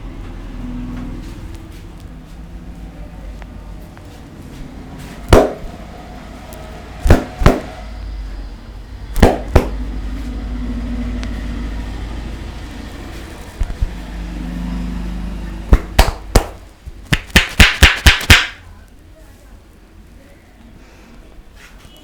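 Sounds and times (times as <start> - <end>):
sharp hand slaps: 5.3 - 5.7, 7.0 - 7.7, 9.2 - 9.8, 15.7 - 18.6.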